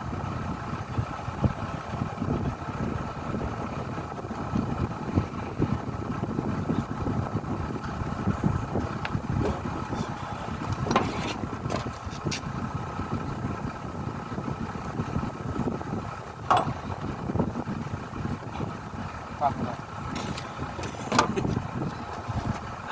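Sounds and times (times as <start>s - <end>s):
engine idling: 0.0s - 22.9s
sharp clicks or knocks: 16.5s - 16.8s.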